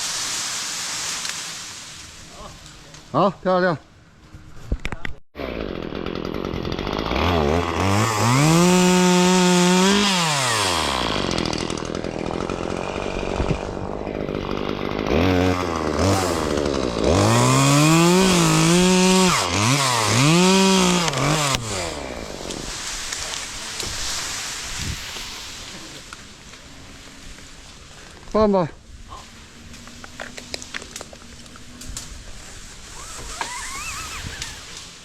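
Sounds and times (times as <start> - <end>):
chainsaw revving and idling: 5.4 - 24.4, 32.8 - 35.0.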